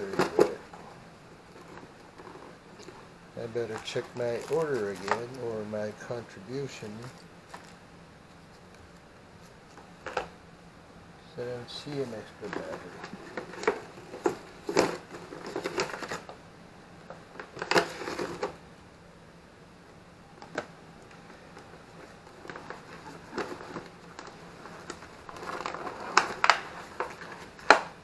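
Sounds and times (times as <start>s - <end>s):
packaging rustling: 1.5s - 5.5s, 11.9s - 16.4s, 17.1s - 18.6s, 20.4s - 28.0s.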